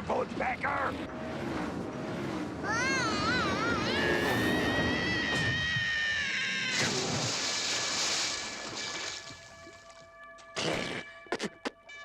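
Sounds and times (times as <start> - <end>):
cartoon noisy rumble: 2.6 - 7.3.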